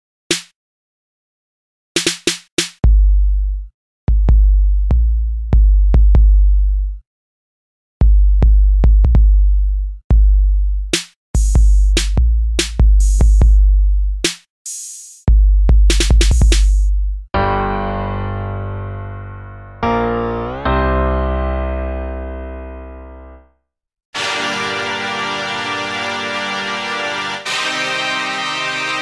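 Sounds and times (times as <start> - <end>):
electronic hip-hop beat: 11.0 - 16.9, 24.2 - 29.0.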